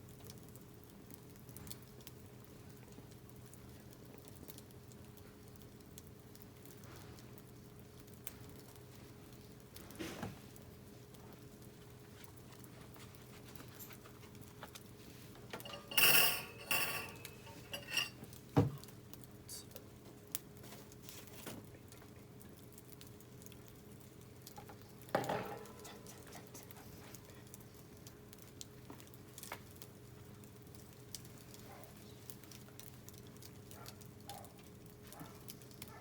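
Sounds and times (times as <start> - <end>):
faint fire crackles: 0.0 - 36.0
metal cans and utensils clinking: 15.6 - 18.2.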